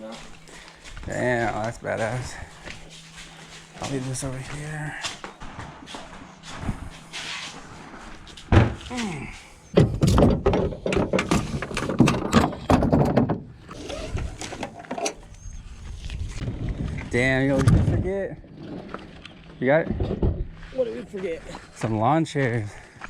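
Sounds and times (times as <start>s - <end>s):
gear knocking and clattering: 9.8s - 15.2s.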